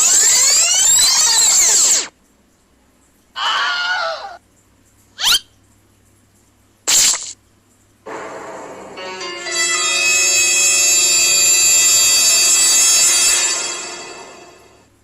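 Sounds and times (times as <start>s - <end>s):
squeaky voice-like effect: 0.0s - 2.1s, 5.2s - 5.5s.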